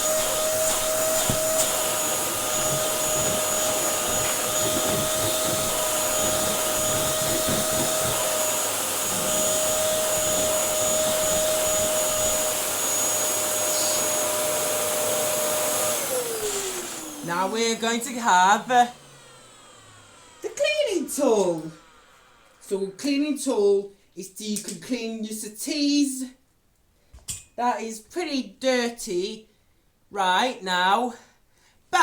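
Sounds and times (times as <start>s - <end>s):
vacuum cleaner running: 0.0s - 23.2s.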